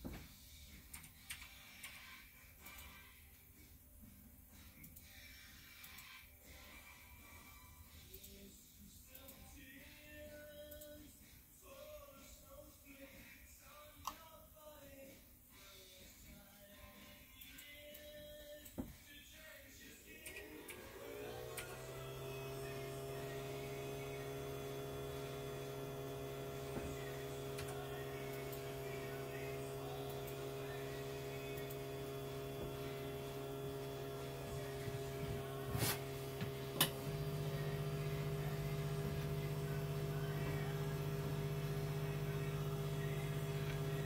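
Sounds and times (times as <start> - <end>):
electrical hum: 20.1 - 44.0.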